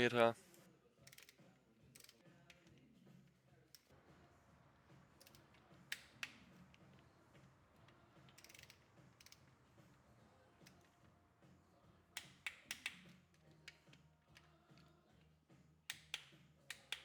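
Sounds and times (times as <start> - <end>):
hand tools clicking on metal: 1.1 - 4.0, 5.1 - 10.0, 10.6 - 11.0, 12.1 - 14.9, 15.9 - 17.0.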